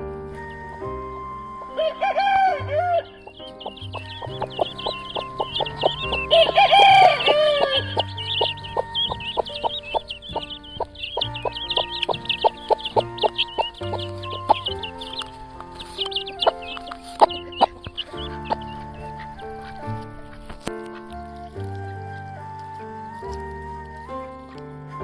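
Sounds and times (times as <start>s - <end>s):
rapid high chirping: 0.4s - 24.6s
rooster crowing: 0.5s - 19.9s.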